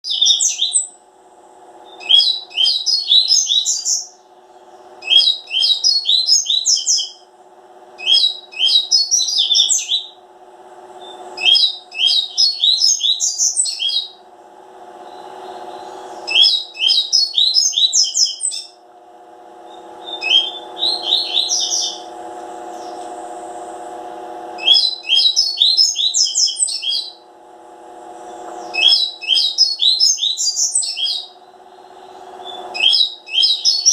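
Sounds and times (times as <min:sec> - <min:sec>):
bird singing chirping phrases: 0:00.0 - 0:01.0, 0:01.8 - 0:07.3, 0:08.0 - 0:10.2, 0:11.0 - 0:14.2, 0:15.0 - 0:18.8, 0:19.7 - 0:22.1, 0:22.7 - 0:23.1, 0:24.6 - 0:27.2, 0:28.2 - 0:33.9
steady low hum: 0:00.0 - 0:33.9.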